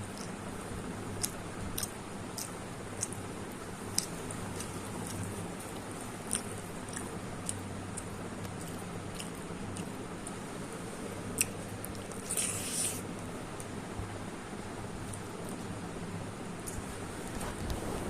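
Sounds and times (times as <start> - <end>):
person chewing: 1.2 - 10.4, 11.2 - 13.7.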